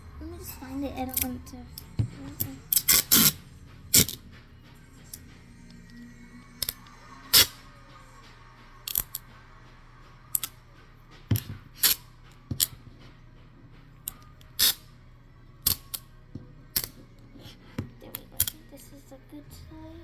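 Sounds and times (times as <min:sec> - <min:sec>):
scissors snipping: 0:01.1 - 0:04.2, 0:08.9 - 0:09.2, 0:10.4 - 0:10.6, 0:11.3 - 0:12.8, 0:15.6 - 0:16.1, 0:16.8 - 0:17.0.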